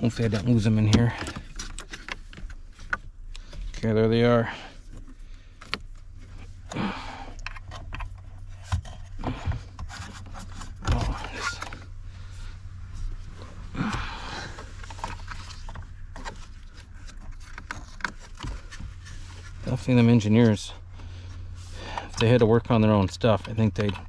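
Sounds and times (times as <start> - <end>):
steady low hum: 0.0 - 24.0
plastic connectors scraping and clicking: 22.1 - 24.0.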